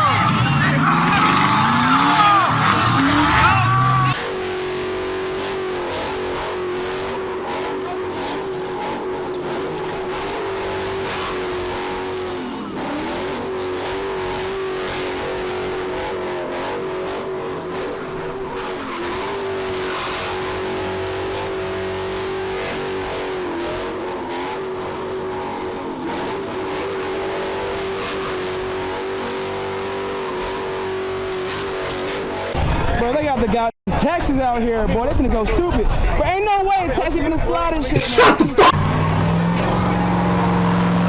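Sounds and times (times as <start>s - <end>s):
tyres squealing: 0.0s - 4.3s, 38.0s - 41.0s
car engine at high revs: 0.0s - 32.7s, 38.1s - 41.0s.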